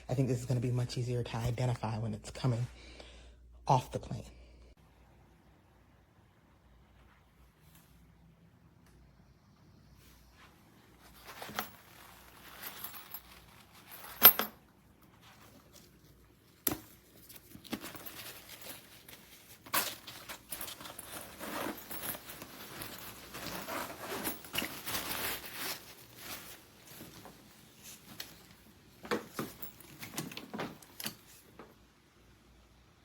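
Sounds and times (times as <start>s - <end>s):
rustling and scraping: 9.9s - 31.8s.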